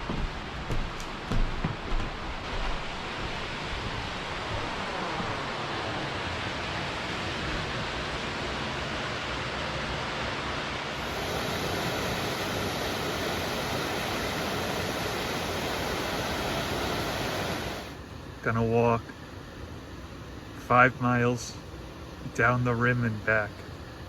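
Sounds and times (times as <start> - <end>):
waterfall rushing: 11.0 - 18.0.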